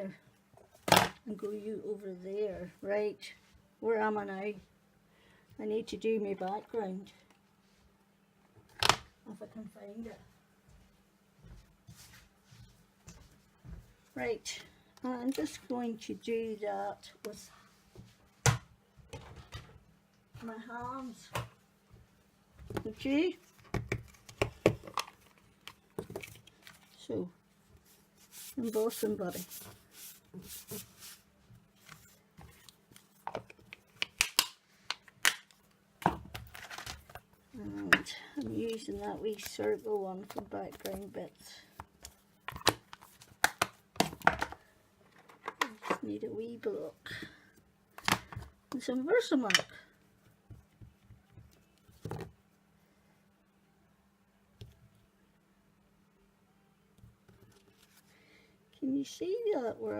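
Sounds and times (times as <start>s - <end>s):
faint rubbing on tabletop: 27.8s - 32.2s.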